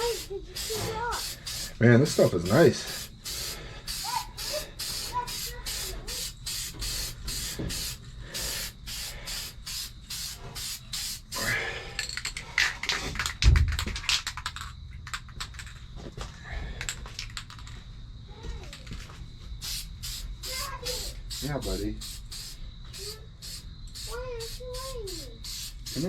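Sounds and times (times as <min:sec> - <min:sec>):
spray paint can hissing: 0:00.0 - 0:12.4, 0:19.6 - 0:26.0.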